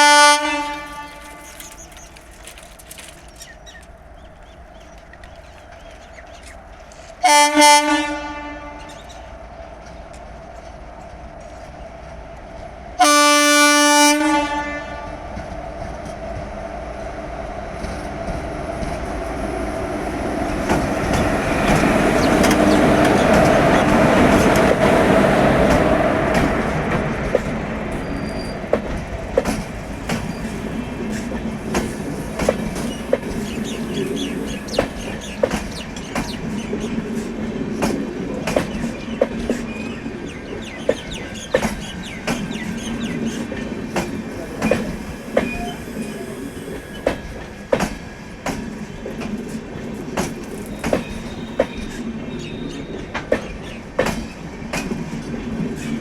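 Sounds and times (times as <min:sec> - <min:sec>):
train horn blasts: 0:00.0 - 0:01.8, 0:07.2 - 0:09.1, 0:13.0 - 0:15.3
train passing: 0:00.0 - 0:56.0
wheel clicks over rail joints: 0:00.6 - 0:07.2.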